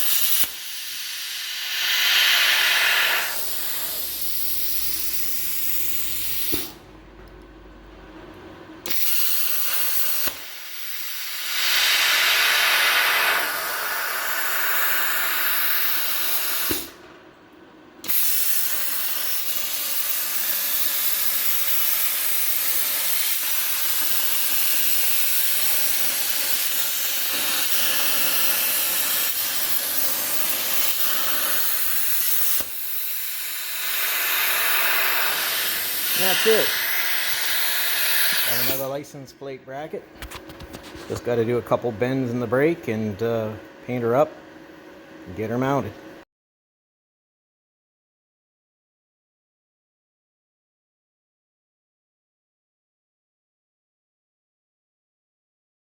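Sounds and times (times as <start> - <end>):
plasma cutter hissing: 0.0 - 6.8, 8.9 - 17.0, 18.0 - 39.0.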